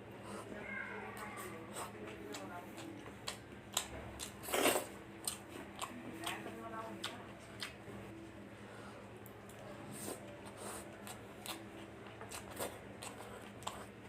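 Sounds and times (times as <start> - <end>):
faint steady hum: 0.0 - 14.0
person chewing food: 1.2 - 7.8, 9.2 - 14.0.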